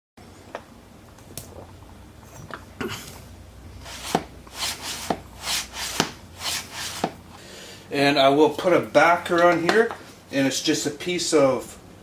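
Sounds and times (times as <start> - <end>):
rhythmic scraping strokes on wood: 3.8 - 7.3.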